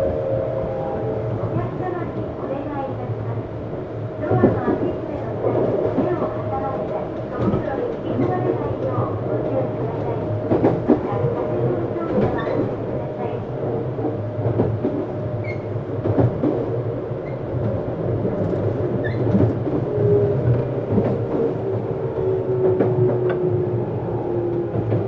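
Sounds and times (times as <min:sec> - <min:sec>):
train wheels rumbling on rail: 0:00.0 - 0:25.0
rail-joint clicks: 0:05.4 - 0:12.9.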